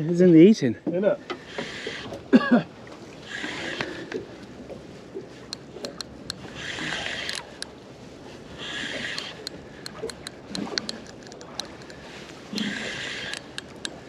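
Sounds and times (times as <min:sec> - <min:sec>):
water slapping against boat hull: 0:08.9 - 0:14.0
light clicks: 0:09.0 - 0:12.0.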